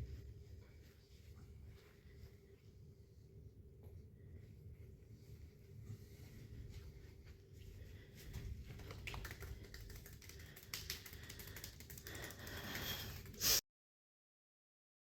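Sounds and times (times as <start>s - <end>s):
faint low hum: 0.0s - 13.4s
light clicks and crackles: 8.2s - 13.5s.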